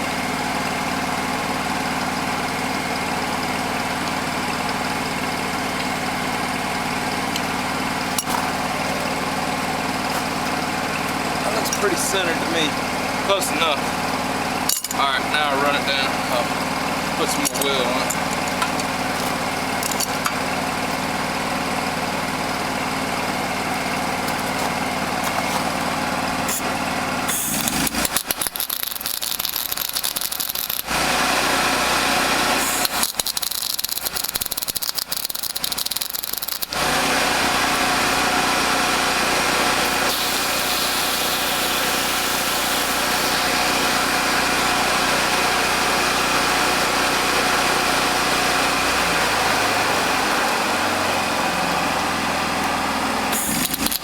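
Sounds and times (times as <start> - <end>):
engine-driven welder running: 0.0 - 54.0
arc welding crackle: 26.5 - 36.8, 39.8 - 44.1.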